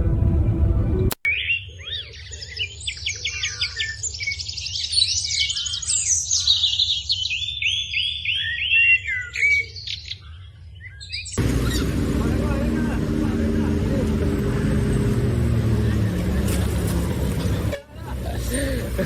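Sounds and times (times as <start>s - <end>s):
small birds chirping: 1.3s - 17.6s
loud steady rumble: 11.4s - 19.0s.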